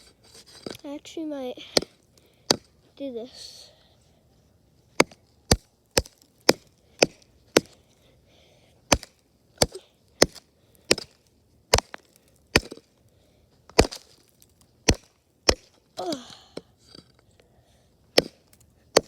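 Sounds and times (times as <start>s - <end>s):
wood being chopped: 1.7s - 2.7s, 5.0s - 7.8s, 8.9s - 13.0s, 13.7s - 17.1s, 18.1s - 19.0s.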